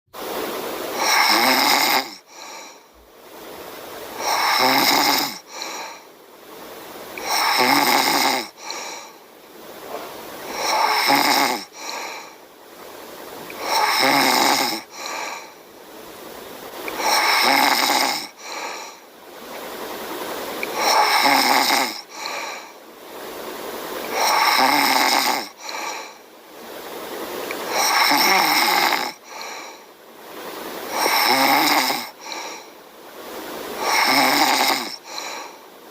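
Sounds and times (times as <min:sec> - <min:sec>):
person snoring: 0:00.9 - 0:02.8, 0:04.1 - 0:06.0, 0:07.2 - 0:09.2, 0:09.9 - 0:12.4, 0:13.5 - 0:15.6, 0:16.9 - 0:19.0, 0:20.6 - 0:22.8, 0:24.0 - 0:26.2, 0:27.6 - 0:29.9, 0:30.9 - 0:32.7, 0:33.8 - 0:35.6.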